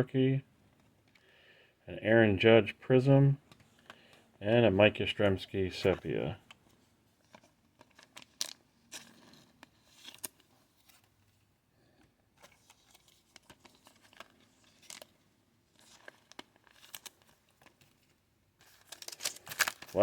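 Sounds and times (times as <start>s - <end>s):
cards and wrappers rustling: 4.8s - 20.0s.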